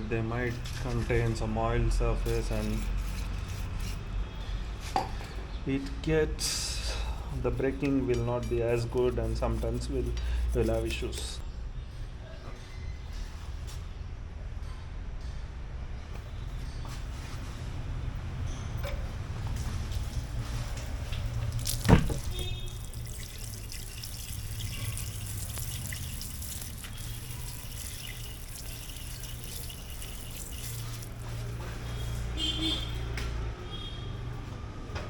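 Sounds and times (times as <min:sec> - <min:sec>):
water running from tap: 0:21.2 - 0:31.6.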